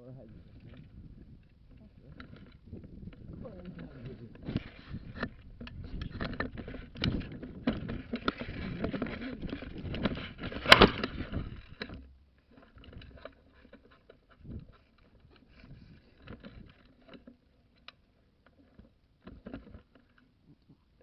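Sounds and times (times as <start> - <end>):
rustling handling noise: 0.0 - 21.0
loud sharp crack: 10.6 - 11.2.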